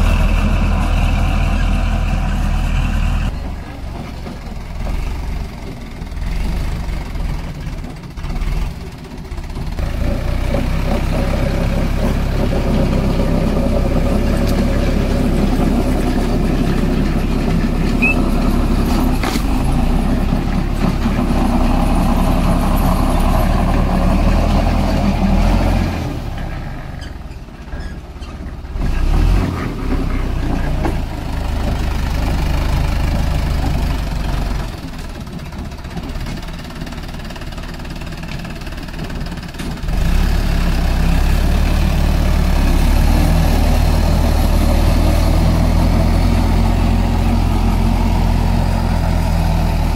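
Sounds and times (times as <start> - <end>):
tractor diesel engine running: 0.0 - 49.9.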